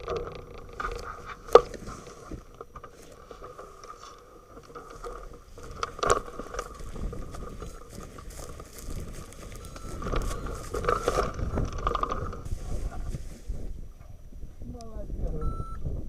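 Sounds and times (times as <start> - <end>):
wind buffeting microphone: 4.4 - 16.0.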